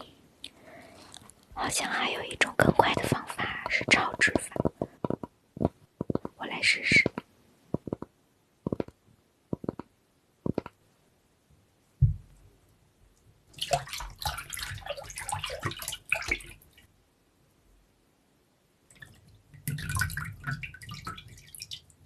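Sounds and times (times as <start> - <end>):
thump: 12.0 - 12.3
water splashing and dripping: 13.5 - 16.9, 18.9 - 22.0.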